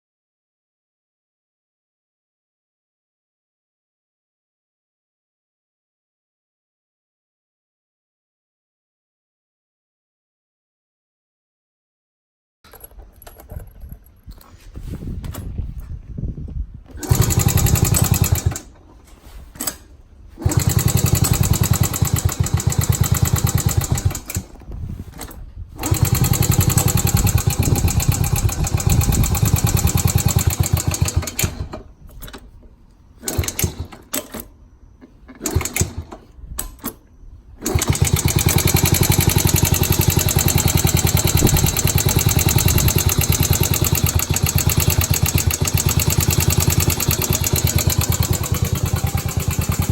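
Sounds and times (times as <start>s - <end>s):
small motorcycle engine running: 16.9s - 18.7s, 20.4s - 24.5s, 25.8s - 31.7s, 37.6s - 49.9s.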